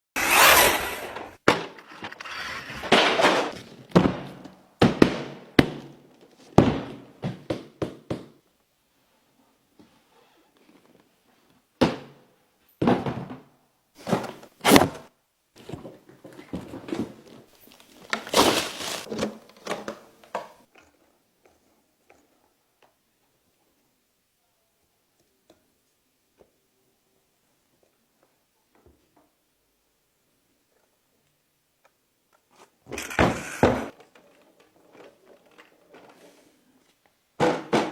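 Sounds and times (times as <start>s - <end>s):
packaging thuds and rustling: 14.0s - 15.0s, 17.0s - 19.4s.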